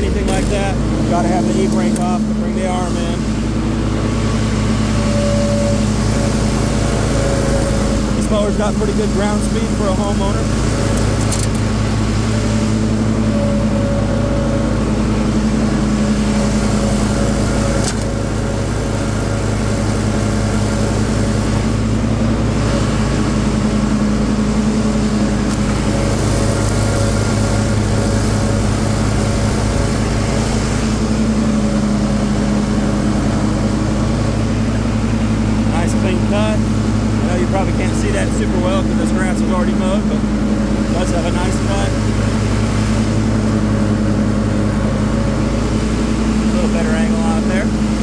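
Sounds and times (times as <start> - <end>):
riding mower engine running: 0.0 - 48.0.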